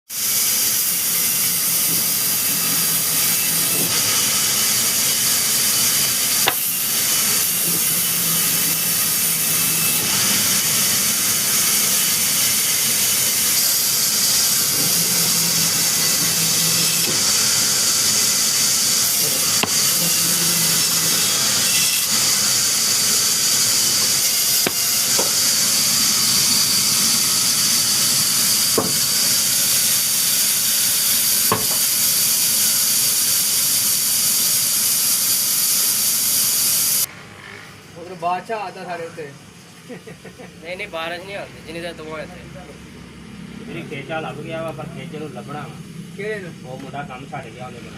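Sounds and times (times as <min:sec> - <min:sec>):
loud steady hissing: 0:00.1 - 0:37.1.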